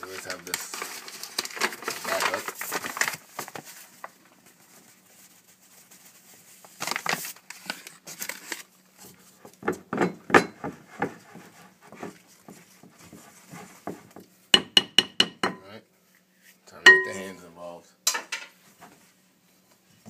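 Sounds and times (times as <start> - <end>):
flour bag rustling: 0.0 - 8.9.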